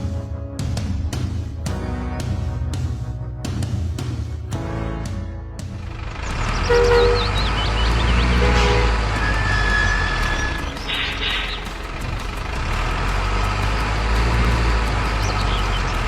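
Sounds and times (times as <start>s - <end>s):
truck engine rumbling: 4.6s - 16.0s.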